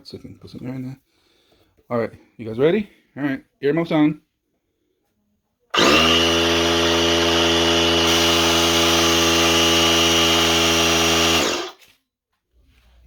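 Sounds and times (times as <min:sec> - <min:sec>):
air compressor running: 0:05.7 - 0:11.8.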